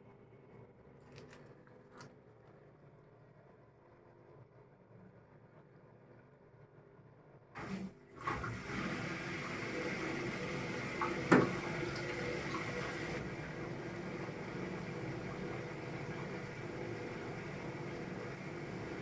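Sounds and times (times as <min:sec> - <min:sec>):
water rushing into washing machine: 0:07.6 - 0:19.0.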